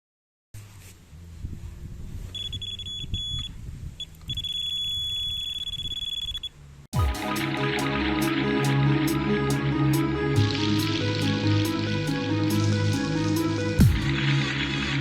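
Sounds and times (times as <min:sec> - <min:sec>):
electronic alarm high tone: 0:07.0 - 0:08.8.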